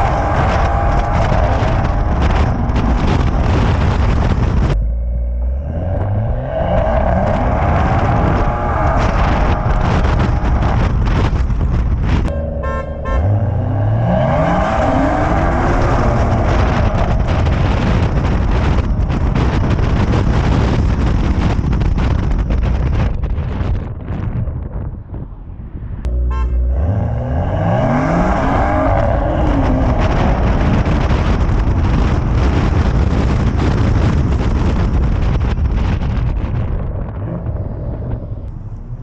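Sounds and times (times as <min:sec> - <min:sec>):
loud traffic noise: 0:00.0 - 0:22.6, 0:25.4 - 0:34.4
car engines accelerating: 0:00.0 - 0:23.1, 0:25.5 - 0:39.0
car horns tooting: 0:12.2 - 0:14.4, 0:26.1 - 0:27.1.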